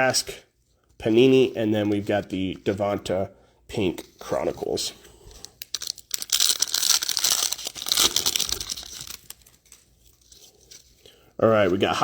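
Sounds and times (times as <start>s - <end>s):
card pack wrapper crinkling and tearing: 5.4s - 11.0s.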